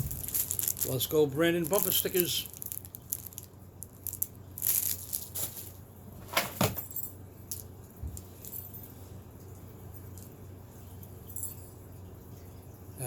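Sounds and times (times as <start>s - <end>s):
packaging rustling: 0.0s - 5.8s
small items clicking and clinking: 0.0s - 5.8s.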